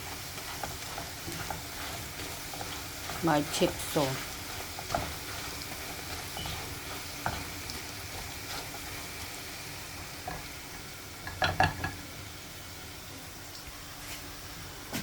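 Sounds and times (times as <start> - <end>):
food sizzling in a pan: 0.0 - 15.0
utensil knocking against pan: 11.3 - 12.0.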